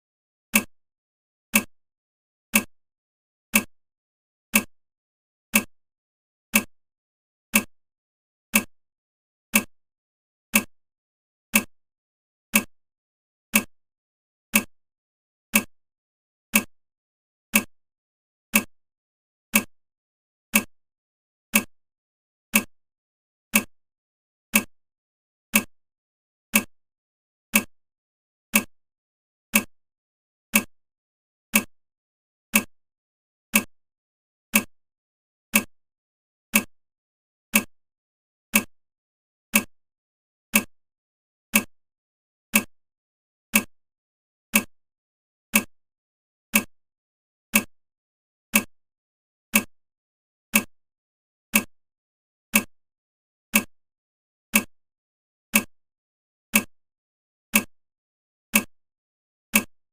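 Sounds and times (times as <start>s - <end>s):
timer ticking: 0.5s - 0.7s, 1.5s - 1.7s, 2.5s - 2.7s, 3.5s - 3.7s, 4.5s - 4.7s, 5.5s - 5.7s, 6.5s - 6.7s, 7.5s - 7.7s, 8.5s - 8.7s, 9.5s - 9.7s, 10.5s - 10.7s, 11.5s - 11.7s, 12.5s - 12.7s, 13.5s - 13.7s, 14.5s - 14.7s, 15.5s - 15.7s, 16.5s - 16.7s, 17.5s - 17.7s, 18.5s - 18.7s, 19.5s - 19.7s, 20.5s - 20.7s, 21.5s - 21.7s, 22.5s - 22.7s, 23.5s - 23.7s, 24.5s - 24.7s, 25.5s - 25.7s, 26.5s - 26.7s, 27.5s - 27.7s, 28.5s - 28.7s, 29.5s - 29.7s, 30.5s - 30.7s, 31.5s - 31.7s, 32.5s - 32.7s, 33.5s - 33.7s, 34.5s - 34.7s, 35.5s - 35.7s, 36.5s - 36.7s, 37.5s - 37.7s, 38.5s - 38.7s, 39.5s - 39.7s, 40.5s - 40.7s, 41.5s - 41.7s, 42.5s - 42.7s, 43.5s - 43.7s, 44.5s - 44.7s, 45.5s - 45.7s, 46.5s - 46.7s, 47.5s - 47.7s, 48.5s - 48.7s, 49.5s - 49.7s, 50.5s - 50.7s, 51.5s - 51.7s, 53.5s - 53.7s, 58.5s - 58.7s, 59.5s - 59.7s.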